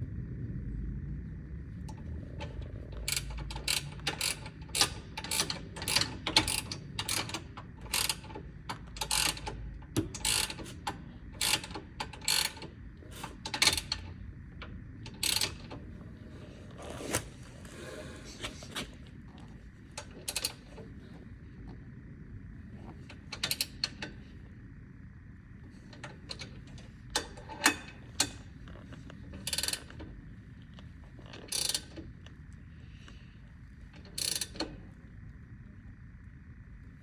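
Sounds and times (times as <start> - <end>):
ratchet wrench clicking: 3.0 - 14.1, 15.1 - 15.7, 23.4 - 24.0, 29.4 - 29.9, 31.5 - 32.0, 34.2 - 34.6.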